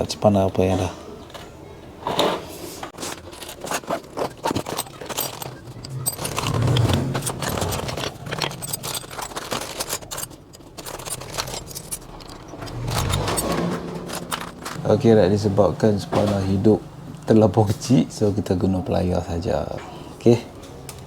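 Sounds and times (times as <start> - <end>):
metal hand tools clinking: 3.0 - 14.9.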